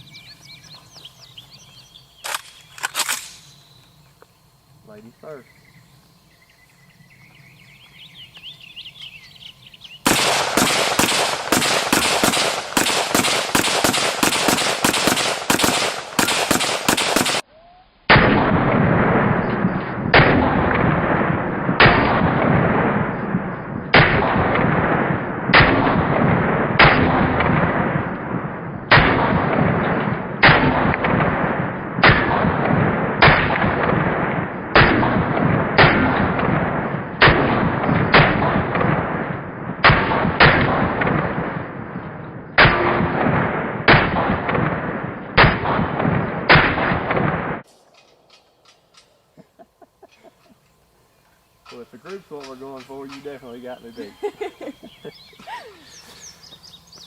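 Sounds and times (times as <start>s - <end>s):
rifle shots: 2.2s - 3.5s, 10.0s - 17.4s, 18.1s - 47.7s.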